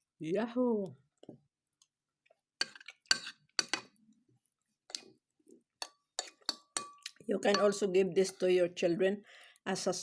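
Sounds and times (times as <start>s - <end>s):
spoon clinking against bowl: 5.8s - 7.9s.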